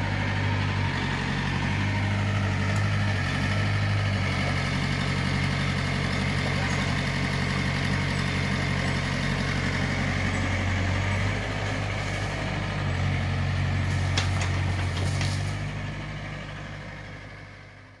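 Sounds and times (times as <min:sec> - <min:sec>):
excavator diesel engine running: 0:00.0 - 0:18.0.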